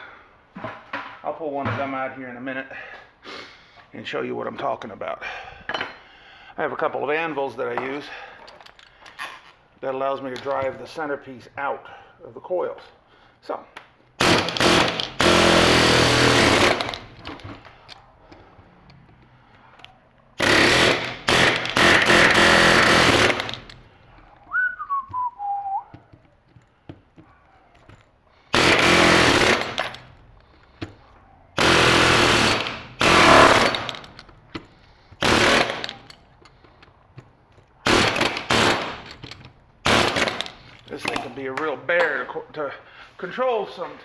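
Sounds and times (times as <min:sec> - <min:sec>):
pneumatic air hammer on steel: 0:20.4 - 0:23.8, 0:28.5 - 0:30.0, 0:31.6 - 0:36.2, 0:37.8 - 0:39.2.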